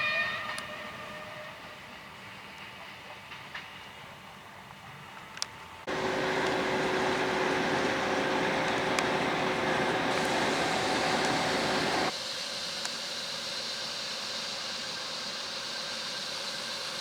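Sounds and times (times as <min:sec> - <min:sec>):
faint railway background: 0:00.0 - 0:17.0
diesel locomotive running: 0:05.9 - 0:12.1.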